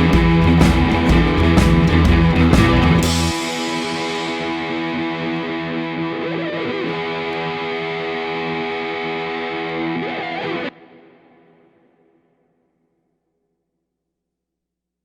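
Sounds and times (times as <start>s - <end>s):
distorted electric guitar chord: 0.0s - 11.8s.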